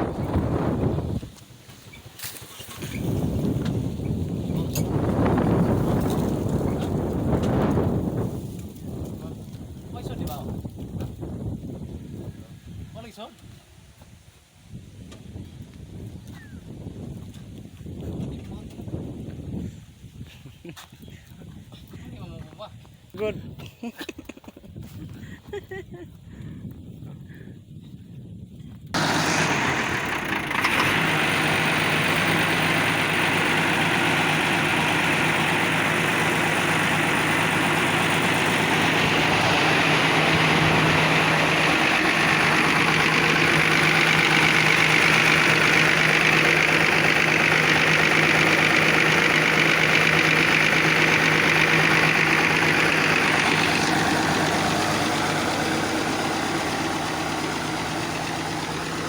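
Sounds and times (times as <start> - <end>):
engine starting and running: 0.0 - 9.2, 29.0 - 59.0.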